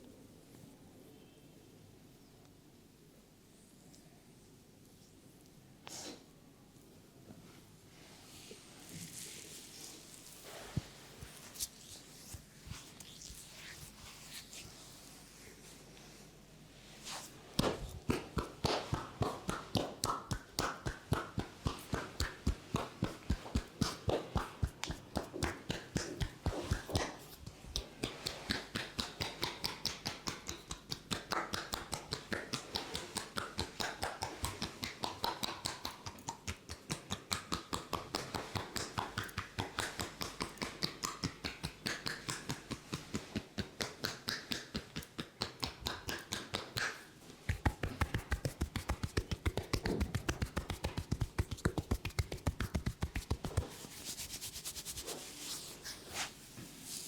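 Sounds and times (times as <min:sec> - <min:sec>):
hands tapping on a head: 0:28.0 - 0:55.1.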